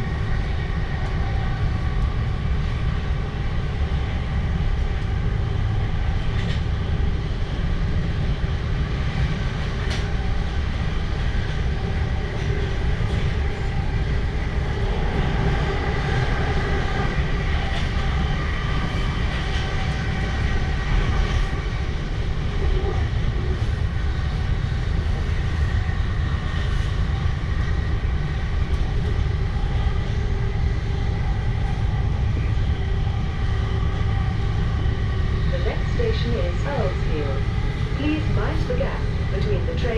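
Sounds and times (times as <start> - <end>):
electric train rumble: 0.0 - 39.9
steady tonal hum: 22.3 - 39.9.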